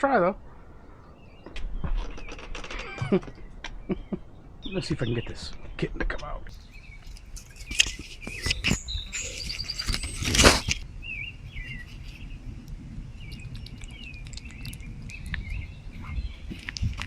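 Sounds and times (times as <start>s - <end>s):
small birds chirping: 0.0s - 17.0s
rustling handling noise: 6.5s - 10.9s.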